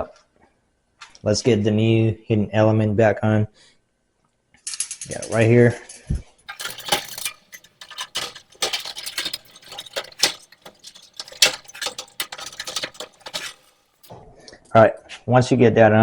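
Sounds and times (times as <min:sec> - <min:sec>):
light metallic clicks and rattles: 0:06.5 - 0:14.1.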